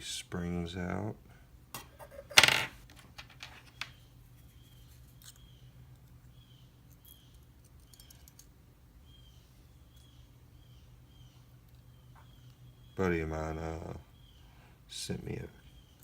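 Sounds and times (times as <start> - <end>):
small metal clicks and clinks: 6.9 - 8.5.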